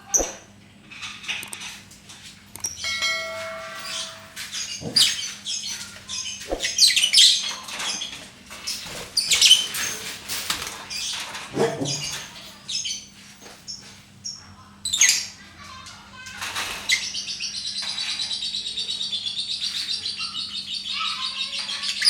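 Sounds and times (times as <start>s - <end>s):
bird chirping: 2.6s - 7.5s.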